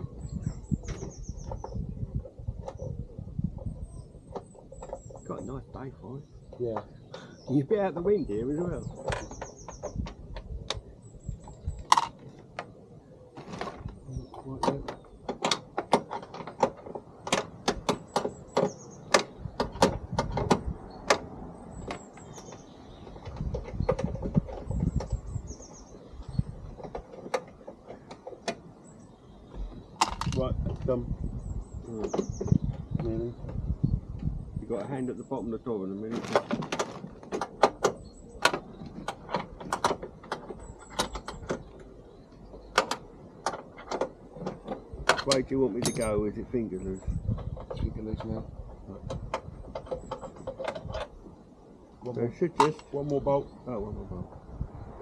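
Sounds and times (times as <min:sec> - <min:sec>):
faint high bird chirps: 0:00.0 - 0:10.1.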